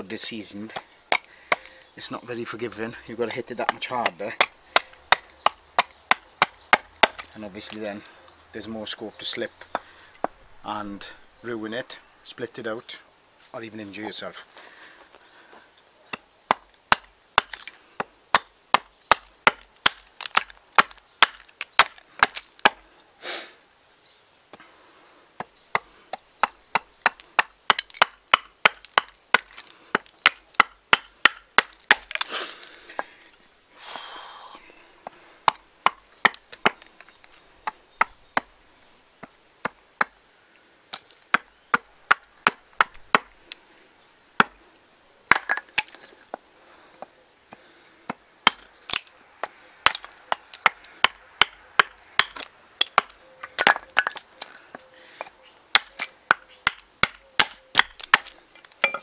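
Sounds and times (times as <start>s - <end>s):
axe chopping wood: 0.7s - 1.7s, 3.6s - 7.9s, 16.1s - 22.8s, 25.4s - 33.1s, 35.4s - 38.5s, 41.0s - 43.4s, 44.4s - 44.6s, 45.3s - 46.0s, 47.5s - 54.3s, 55.7s - 59.0s.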